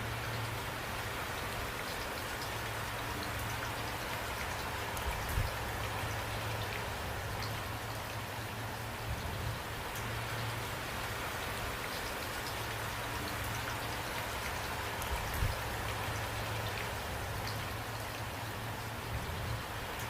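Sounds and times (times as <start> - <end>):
raindrops ticking: 0.0 - 20.0
steady rain falling: 0.0 - 20.0.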